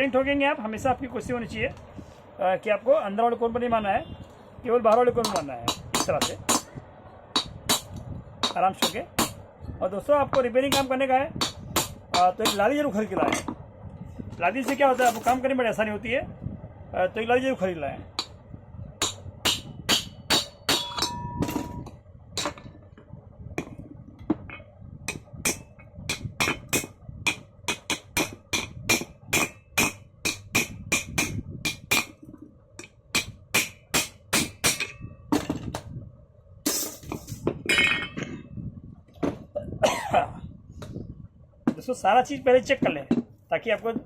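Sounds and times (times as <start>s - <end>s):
hammer knocking on metal bearing: 5.2s - 6.7s, 25.1s - 32.2s.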